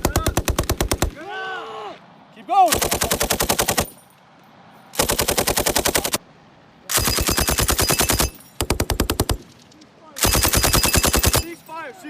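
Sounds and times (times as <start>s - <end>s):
machine gun bursts: 2.7s - 4.0s, 5.0s - 6.2s, 6.9s - 9.4s, 10.2s - 11.6s.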